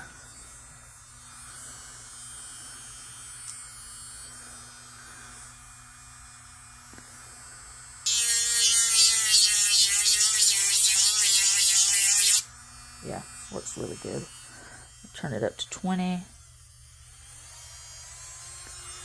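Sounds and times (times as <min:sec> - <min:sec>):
nail drill motor humming: 0:08.0 - 0:15.1, 0:17.0 - 0:19.0
nail drill grinding whine: 0:08.0 - 0:15.6, 0:16.6 - 0:19.0.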